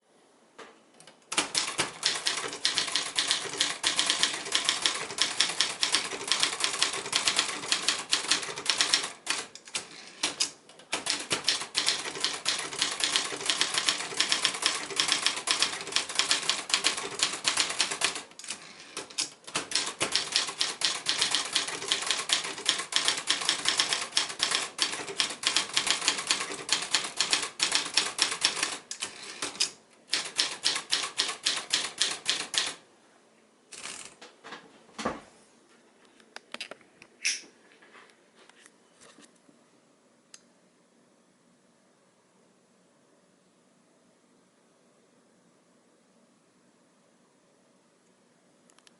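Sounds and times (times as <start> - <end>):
typewriter key strikes: 1.3 - 32.8.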